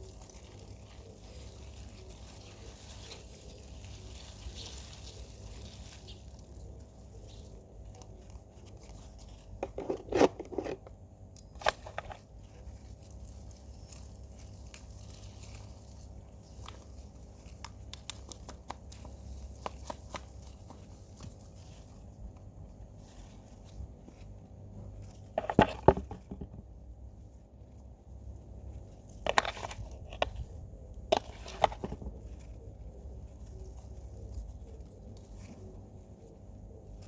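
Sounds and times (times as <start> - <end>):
loud rustling crunch: 0.0 - 10.9
hands rustling in soil: 0.0 - 37.0.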